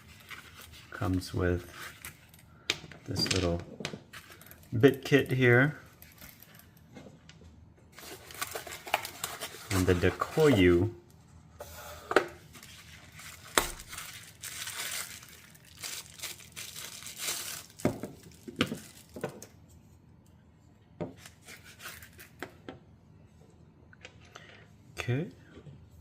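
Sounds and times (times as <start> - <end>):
packaging rustling: 0.0 - 2.5, 7.9 - 10.9, 12.4 - 19.4.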